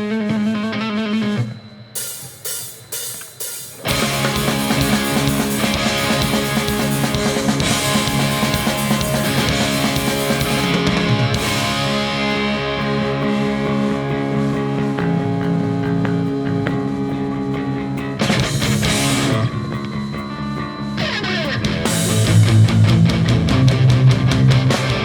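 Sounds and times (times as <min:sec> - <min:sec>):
punk band playing: 0:00.0 - 0:25.0
loud full-band hits: 0:03.1 - 0:12.8
solo electric guitar: 0:03.8 - 0:25.0.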